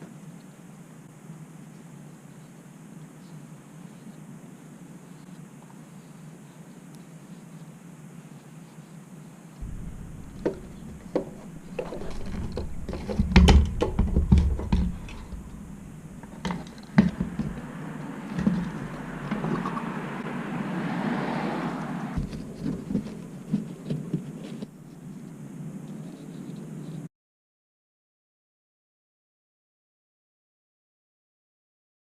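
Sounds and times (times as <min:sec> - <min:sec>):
hissing noise: 0:09.6 - 0:23.3.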